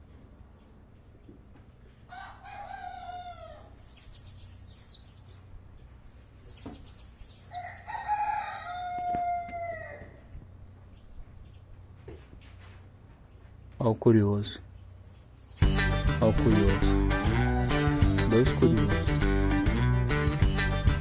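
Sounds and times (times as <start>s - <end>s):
small bird chirping: 0.0s - 8.1s, 10.1s - 19.7s
rooster crowing: 2.1s - 3.8s, 7.5s - 10.3s, 17.0s - 18.4s.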